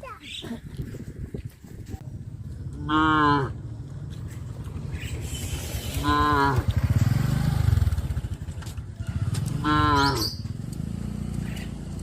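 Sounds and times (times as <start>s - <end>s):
cattle mooing: 2.8s - 3.6s, 6.0s - 6.7s, 9.6s - 10.3s.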